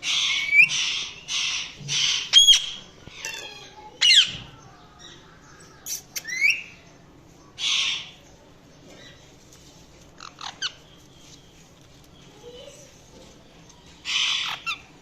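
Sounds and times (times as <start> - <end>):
parakeet chirping and squawking: 0.0 - 4.4, 7.6 - 8.2, 10.1 - 11.0, 14.0 - 15.0.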